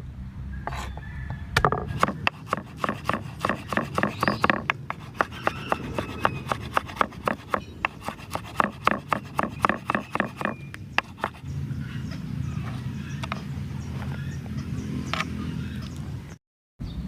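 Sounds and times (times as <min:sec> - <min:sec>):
hand tool scraping strokes: 0:01.8 - 0:11.4.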